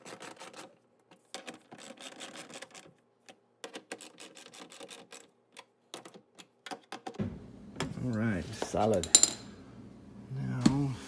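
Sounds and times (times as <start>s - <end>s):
hand tools clicking and rattling: 8.7s - 9.5s.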